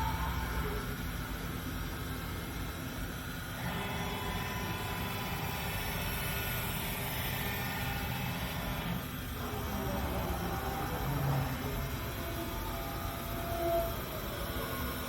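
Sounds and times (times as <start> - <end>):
faint motor whines: 0.0 - 15.0
router machine drone: 3.5 - 15.0.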